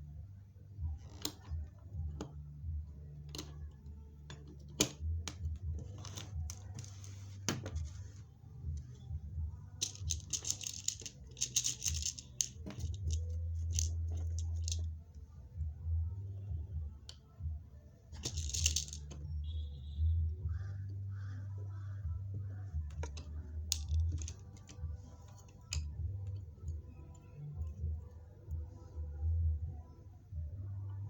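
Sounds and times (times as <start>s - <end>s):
rustling handling noise: 5.8s - 8.4s, 9.8s - 14.9s, 18.2s - 19.2s.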